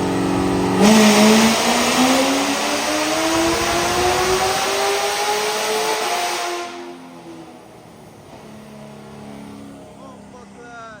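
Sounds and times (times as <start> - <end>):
car engine at full throttle: 0.0 - 11.0
exhaust rush: 0.0 - 11.0.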